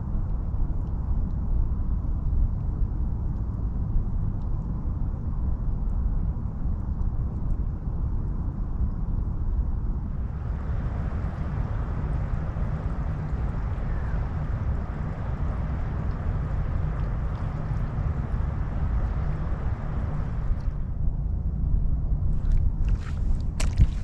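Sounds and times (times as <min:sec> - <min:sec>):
wind buffeting microphone: 0:09.1 - 0:24.0
rushing outdoor noise: 0:10.0 - 0:21.4, 0:22.1 - 0:24.0.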